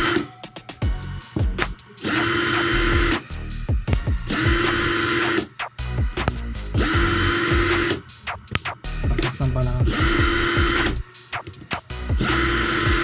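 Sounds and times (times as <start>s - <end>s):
cordless drill motor whine: 2.0s - 3.2s, 4.2s - 5.4s, 6.8s - 8.0s, 9.9s - 11.0s, 12.2s - 13.0s.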